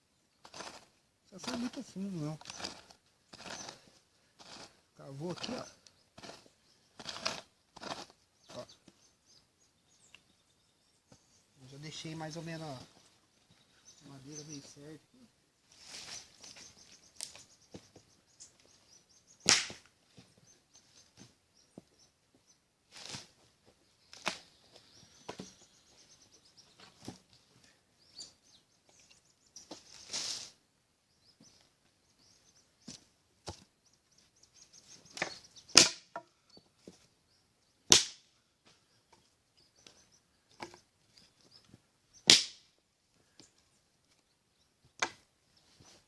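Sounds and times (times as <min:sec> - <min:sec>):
sticks snapping and knocking: 0:19.4 - 0:19.9, 0:24.1 - 0:24.5, 0:35.1 - 0:36.3, 0:37.9 - 0:38.3, 0:42.2 - 0:42.7, 0:45.0 - 0:45.2.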